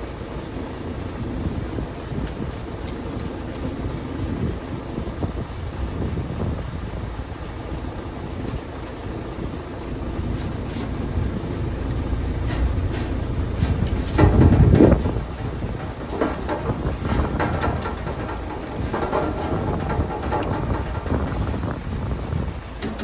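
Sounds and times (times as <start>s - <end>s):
engine running with low rumble: 0.0s - 23.0s.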